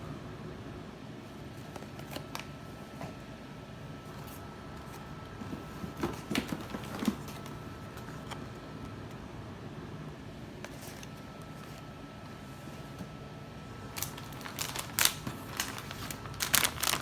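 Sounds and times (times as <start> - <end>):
low background hum: 0.0 - 17.0
packages being handled: 1.4 - 3.2, 3.9 - 9.0, 10.6 - 17.0.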